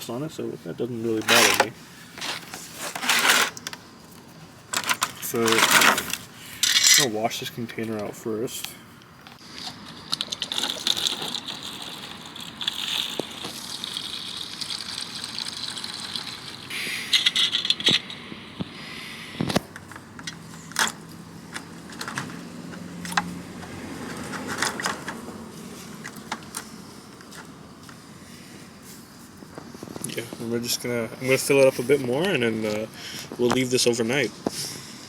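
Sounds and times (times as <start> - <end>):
water splashing into container: 10.4 - 16.7.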